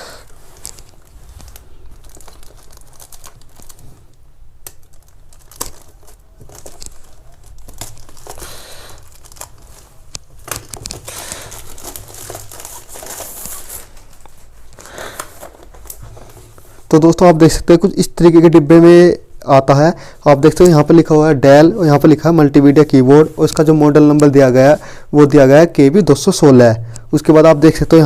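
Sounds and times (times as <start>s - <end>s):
plastic wrapper crinkling and tearing: 0.2s - 16.3s.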